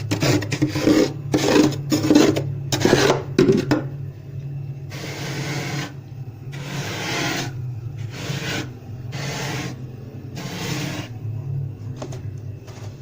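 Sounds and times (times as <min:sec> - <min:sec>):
frost being scraped: 0:00.0 - 0:03.1, 0:06.6 - 0:09.8, 0:10.4 - 0:11.1
low steady hum: 0:00.0 - 0:13.0.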